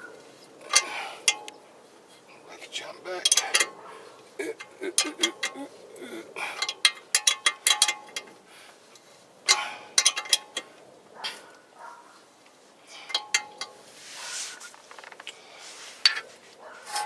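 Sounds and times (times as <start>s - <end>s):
wrench clinking on metal parts: 0.6s - 1.5s, 3.2s - 3.8s, 4.5s - 5.6s, 6.4s - 8.4s, 9.5s - 10.7s, 13.0s - 13.8s.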